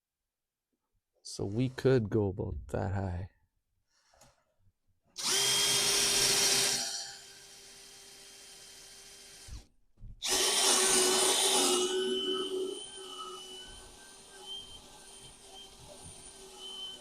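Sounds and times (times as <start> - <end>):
power drill boring into wood: 5.2 - 17.0.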